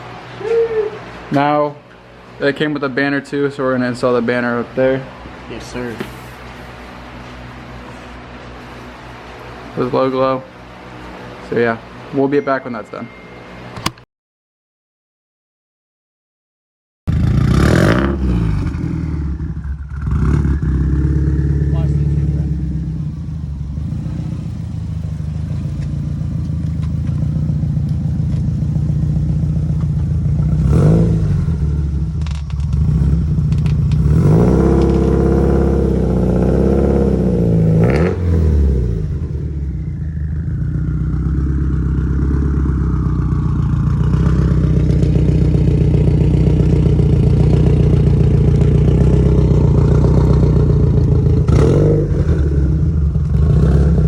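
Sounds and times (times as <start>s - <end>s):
car engine revving: 17.1s - 54.0s.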